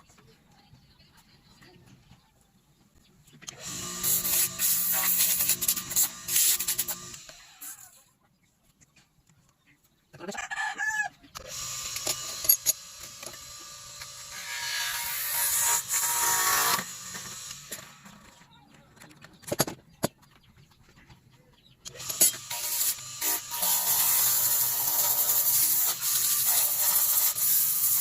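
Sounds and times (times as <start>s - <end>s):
rasping scraping work noise: 3.4s - 8.0s, 11.4s - 18.5s, 21.9s - 28.0s.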